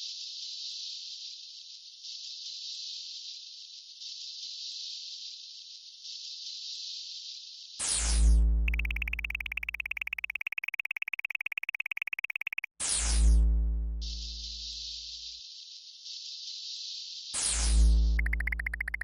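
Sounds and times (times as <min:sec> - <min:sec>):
rapidly pulsing electronic tone: 0:08.6 - 0:12.8, 0:18.1 - 0:19.0.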